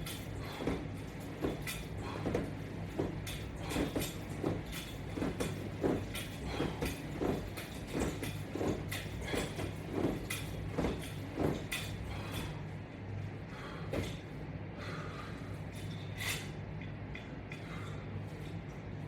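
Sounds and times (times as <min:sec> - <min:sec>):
person doing sit-ups: 0:00.0 - 0:12.7.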